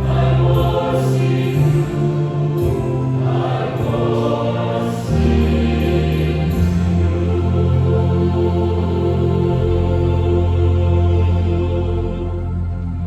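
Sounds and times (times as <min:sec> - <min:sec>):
choir singing in harmony: 0:00.0 - 0:13.0.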